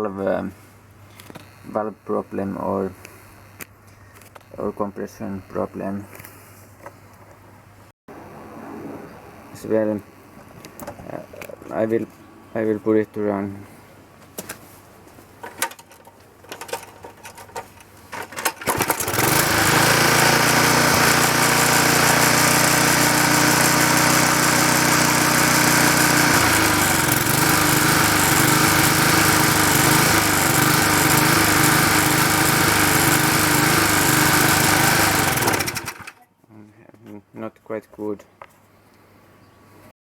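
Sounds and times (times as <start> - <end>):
lawnmower engine running: 16.4 - 36.2.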